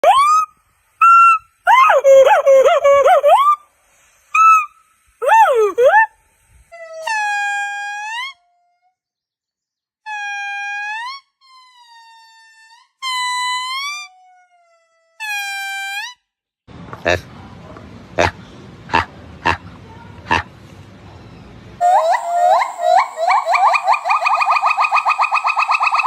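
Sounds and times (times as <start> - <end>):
monkey calls: 0.0 - 3.6, 4.4 - 6.2, 21.8 - 26.0.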